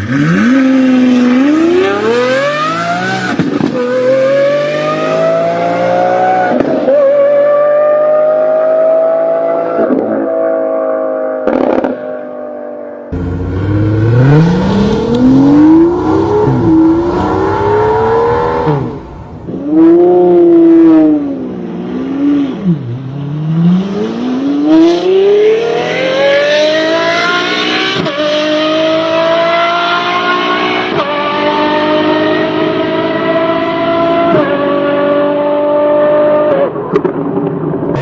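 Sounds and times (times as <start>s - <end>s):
car engines accelerating hard: 0.0s - 11.9s, 13.1s - 38.0s.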